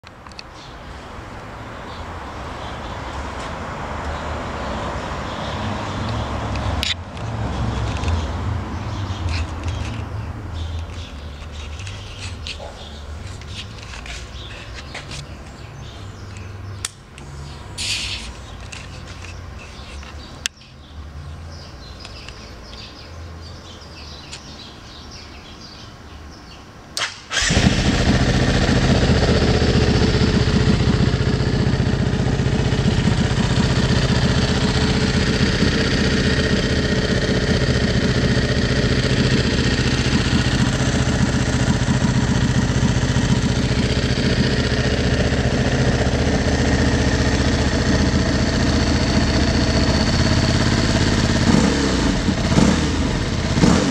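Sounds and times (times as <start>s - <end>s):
motorcycle engine starting: 27.0s - 53.9s.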